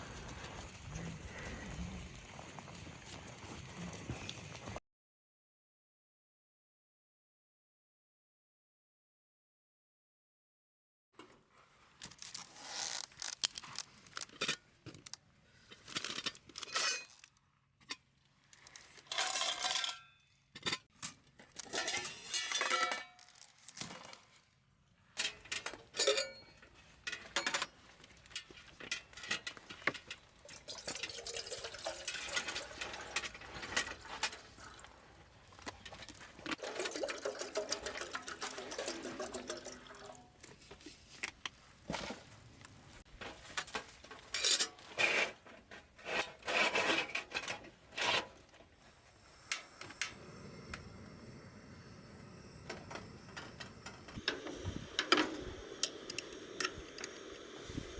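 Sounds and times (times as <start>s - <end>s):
utensils and cookware clinking: 16.0s - 18.0s, 19.0s - 23.4s, 25.2s - 34.9s, 35.8s - 40.3s, 43.5s - 48.5s
steady hiss: 48.8s - 57.9s.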